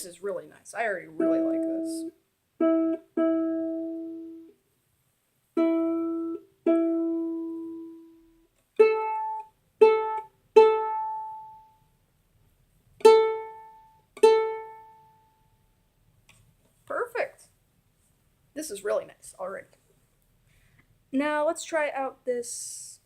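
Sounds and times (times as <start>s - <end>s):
ukulele strings plucked: 5.6s - 8.2s, 8.8s - 11.8s, 13.0s - 15.4s.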